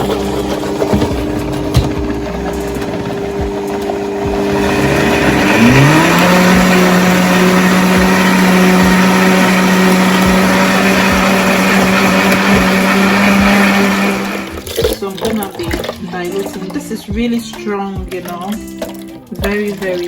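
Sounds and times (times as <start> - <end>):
blender motor whine: 0.0 - 14.6.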